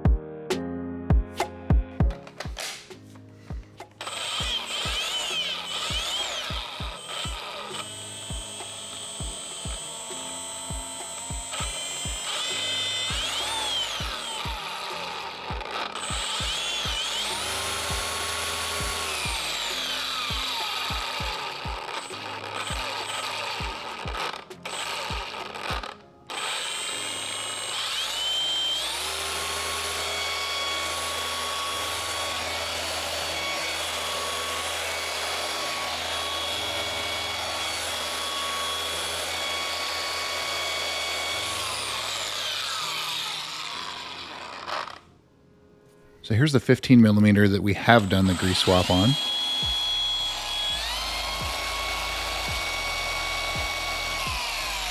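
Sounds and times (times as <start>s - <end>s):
background music: 0.0s - 54.9s
cordless polisher whining: 3.9s - 45.1s, 47.8s - 54.9s.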